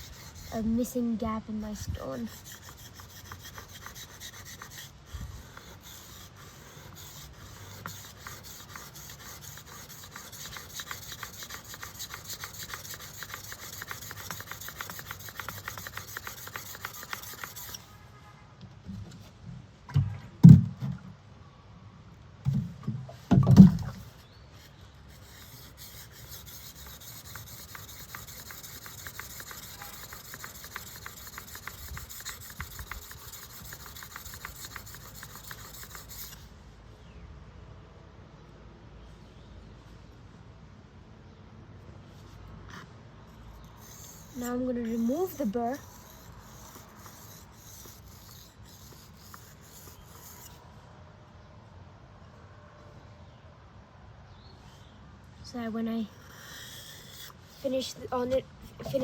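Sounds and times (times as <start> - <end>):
knife scraping on whetstone: 0.0 - 1.0, 2.1 - 17.9, 24.0 - 36.4, 43.6 - 50.6, 56.1 - 59.0.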